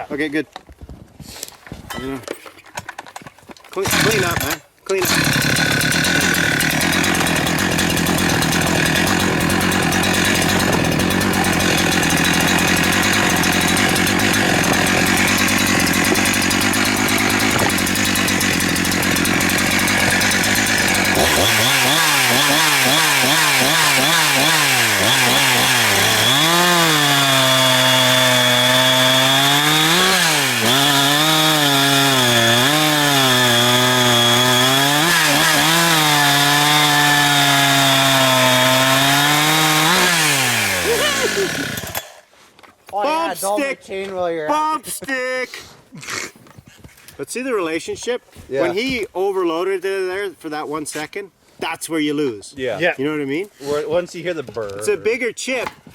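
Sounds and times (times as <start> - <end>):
chainsaw cutting through log: 3.8 - 42.3.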